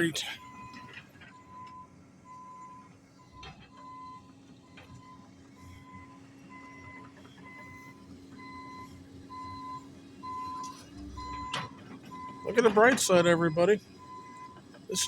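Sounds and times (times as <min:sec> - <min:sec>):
low engine hum: 0:00.0 - 0:15.0.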